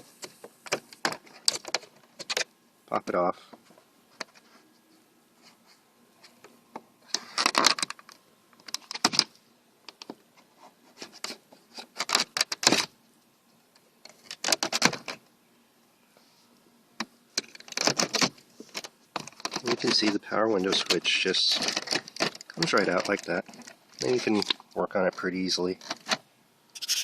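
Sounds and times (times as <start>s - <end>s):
plastic clicking and rattling: 0.2s - 2.5s, 7.1s - 9.3s, 11.2s - 12.9s, 14.0s - 15.2s, 17.0s - 24.6s, 25.8s - 26.2s.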